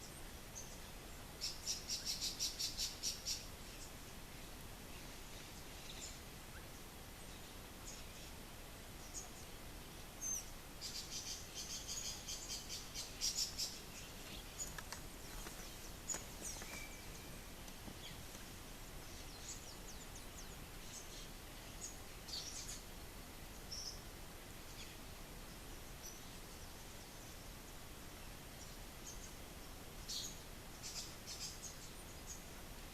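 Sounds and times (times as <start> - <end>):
steady hiss: 0.0 - 32.9
birds chirping: 4.9 - 24.1.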